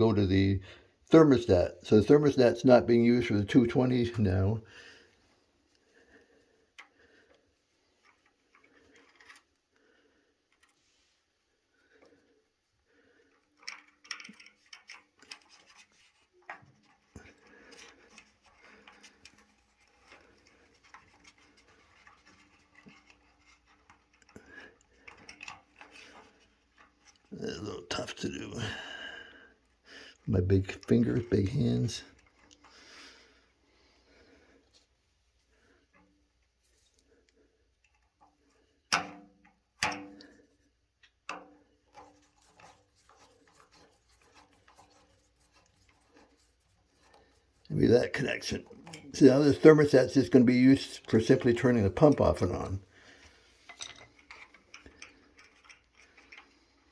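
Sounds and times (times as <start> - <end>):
faint clicks and scratches of wires: 0.1 - 56.9
faint ticks and rubbing: 5.2 - 12.3, 13.2 - 38.8, 40.2 - 56.9.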